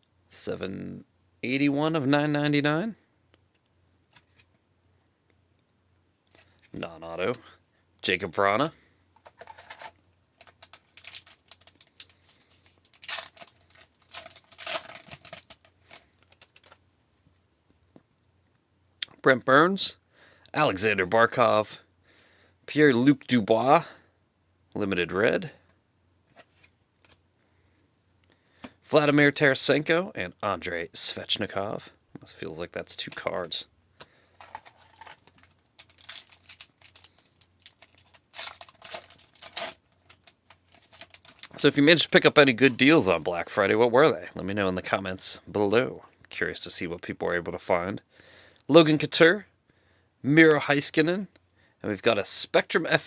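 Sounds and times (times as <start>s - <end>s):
cards clicking and rustling: 9.2s - 16.8s, 34.0s - 42.0s
wrapper tearing and crinkling: 9.4s - 16.8s, 34.4s - 42.0s.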